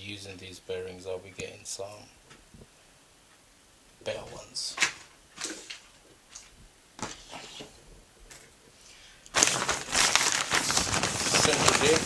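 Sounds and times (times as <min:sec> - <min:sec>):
packaging crinkling: 0:04.2 - 0:07.7, 0:09.3 - 0:12.0
light clicks and rustles: 0:04.2 - 0:08.8.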